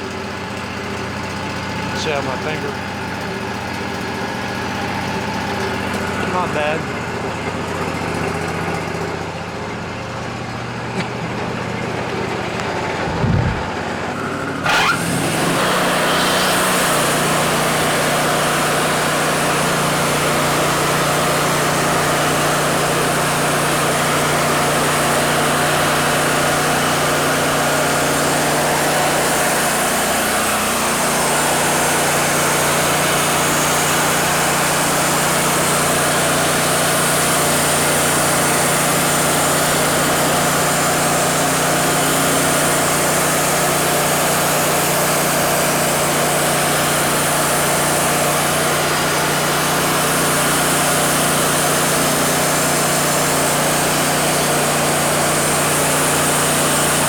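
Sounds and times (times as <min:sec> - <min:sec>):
band sawmill engine humming: 0:00.0 - 0:57.0
band blade sawing log: 0:11.0 - 0:13.9, 0:14.5 - 0:57.0.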